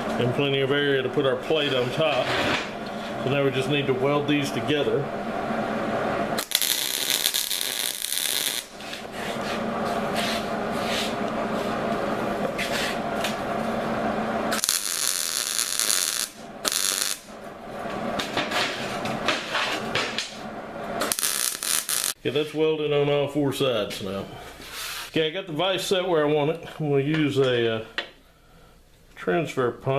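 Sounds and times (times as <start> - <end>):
arc welding crackling sizzle: 6.4 - 11.2, 12.0 - 17.5, 19.9 - 22.2.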